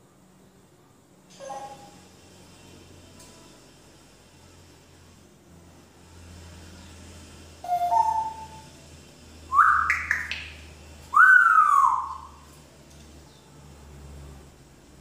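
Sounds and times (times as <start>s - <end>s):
parrot whistling: 1.4s - 2.0s, 7.6s - 8.6s, 9.5s - 10.5s, 11.1s - 12.4s.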